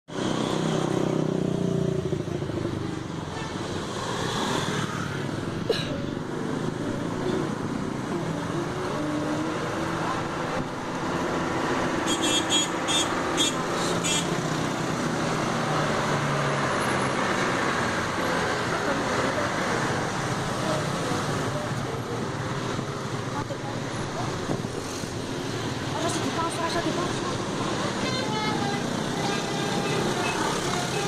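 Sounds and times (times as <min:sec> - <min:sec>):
bus engines running: 0:00.1 - 0:31.0
road traffic: 0:00.1 - 0:31.0
musical bus horn notes: 0:28.0 - 0:31.0.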